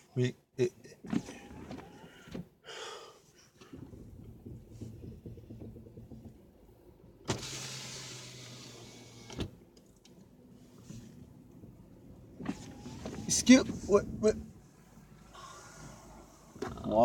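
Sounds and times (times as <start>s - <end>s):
low car cabin hum: 0.6s - 2.6s, 3.3s - 17.0s
window stopping thunk: 3.6s - 9.6s, 11.6s - 14.4s
power window motor running: 7.3s - 9.6s, 12.3s - 14.0s.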